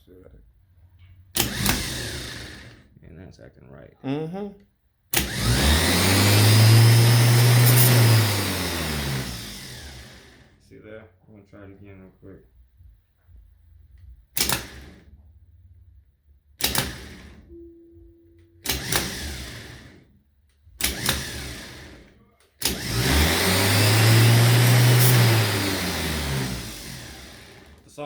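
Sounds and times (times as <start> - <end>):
starter motor cranking whine: 1.3 - 2.9, 5.1 - 10.6, 14.4 - 15.2, 16.6 - 17.5, 18.6 - 28.0.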